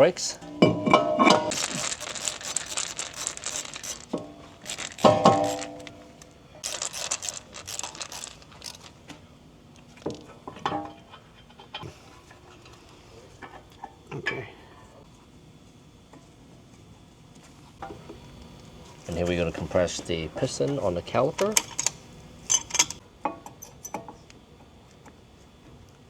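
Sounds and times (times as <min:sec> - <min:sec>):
metal tools clinking and clanking: 0:00.7 - 0:09.0, 0:21.4 - 0:23.0.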